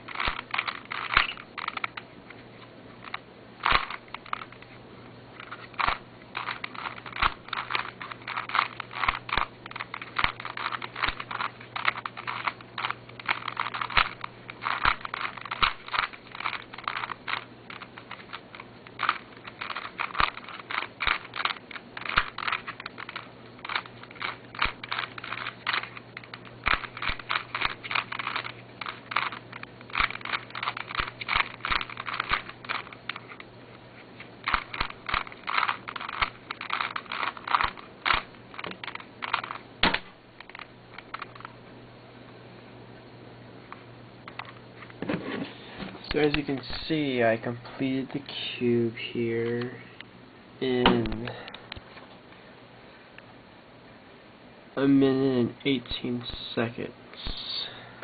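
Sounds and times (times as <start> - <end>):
plastic puzzle cube clacking: 0.1 - 2.4, 3.0 - 4.7, 5.4 - 33.4, 34.2 - 41.6.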